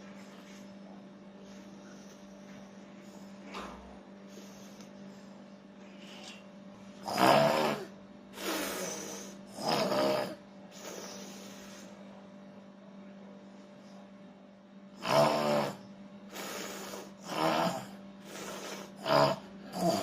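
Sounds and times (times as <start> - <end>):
steady low hum: 0.0 - 20.0
person snoring: 7.0 - 11.9, 15.0 - 20.0.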